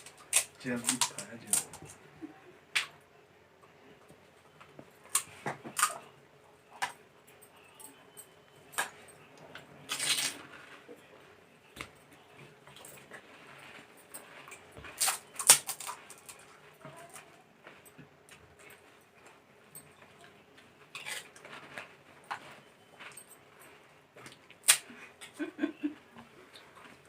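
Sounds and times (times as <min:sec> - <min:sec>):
crunching fried snacks: 0:00.0 - 0:02.0, 0:05.0 - 0:06.0, 0:09.8 - 0:10.8, 0:14.1 - 0:17.3, 0:20.9 - 0:22.4, 0:24.2 - 0:25.3.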